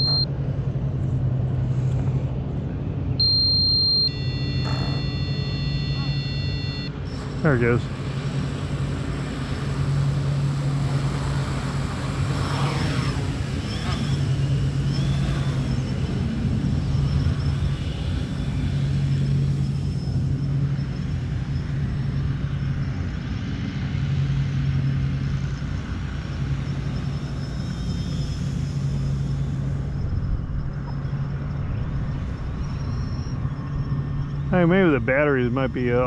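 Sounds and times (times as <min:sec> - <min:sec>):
heavy low rumble: 0:00.0 - 0:12.5
quadcopter motors humming: 0:00.0 - 0:36.0.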